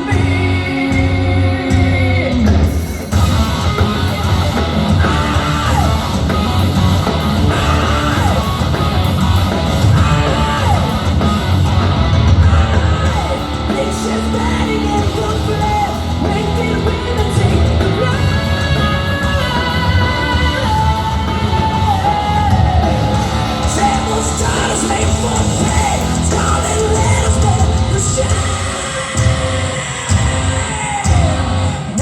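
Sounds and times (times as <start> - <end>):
bass guitar: 0.0 - 32.0
distorted electric guitars: 0.0 - 32.0
drums: 0.0 - 32.0
woman singing and yelling: 12.7 - 29.8.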